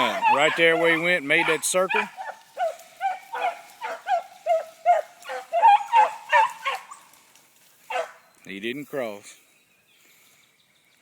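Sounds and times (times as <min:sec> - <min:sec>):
dogs baying: 0:00.0 - 0:07.1, 0:07.8 - 0:08.2.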